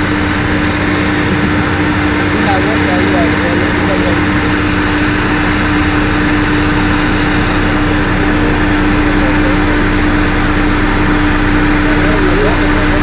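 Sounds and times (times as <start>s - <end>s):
drilling rig engine drone: 0.0s - 13.0s.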